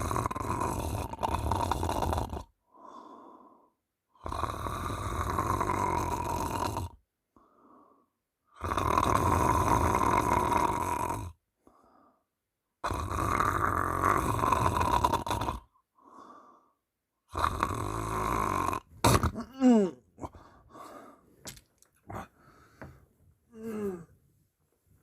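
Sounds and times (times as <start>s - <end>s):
person snoring loudly: 0.0s - 7.0s, 8.5s - 11.4s, 12.8s - 21.1s, 23.5s - 24.1s
faint breaths: 2.6s - 3.8s, 7.3s - 8.2s, 11.6s - 12.4s, 15.8s - 16.9s, 20.1s - 21.4s, 22.0s - 25.0s.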